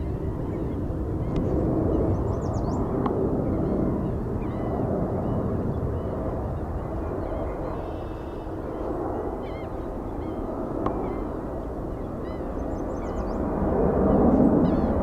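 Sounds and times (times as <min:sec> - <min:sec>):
jet noise rumble: 0:00.0 - 0:15.0
small birds chirping: 0:00.1 - 0:03.0.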